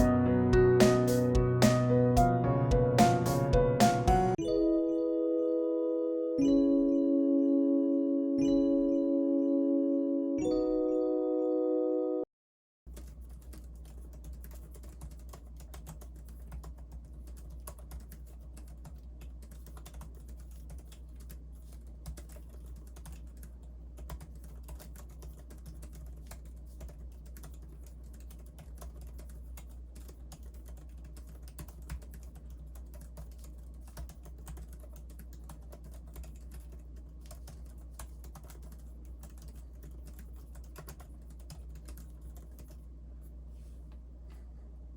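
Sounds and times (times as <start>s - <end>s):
soft keyboard typing clicks: 12.9s - 42.8s.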